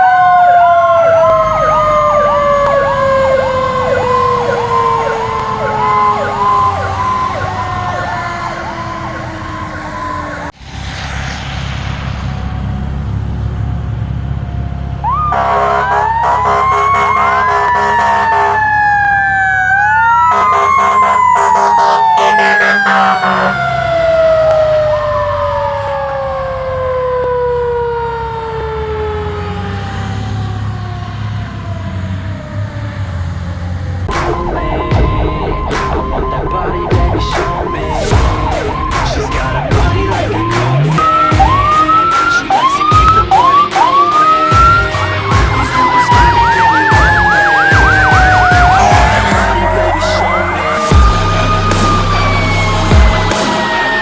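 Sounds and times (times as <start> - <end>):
electronic siren yelping: 0.0 - 10.5, 15.0 - 33.0, 34.1 - 54.0
mechanical siren wailing: 0.0 - 10.6, 12.7 - 54.0
pulsed horn blasts: 0.0 - 19.2, 20.1 - 25.1, 34.1 - 54.0
heavy truck engines rumbling: 0.0 - 54.0.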